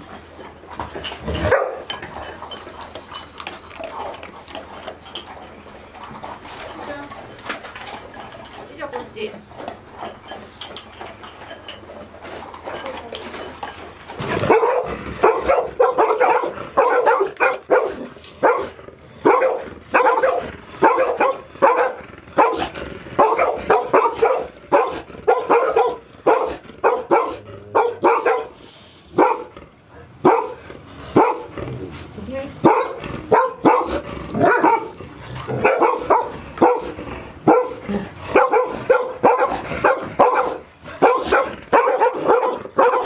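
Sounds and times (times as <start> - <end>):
dogs barking: 1.3 - 2.0, 14.2 - 29.6, 30.2 - 31.6, 32.6 - 43.0.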